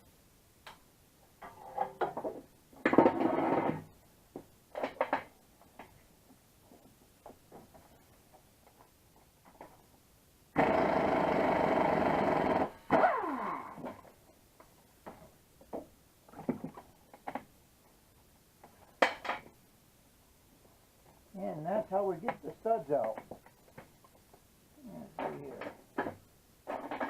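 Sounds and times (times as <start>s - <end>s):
impact wrench running: 10.6s - 13.9s.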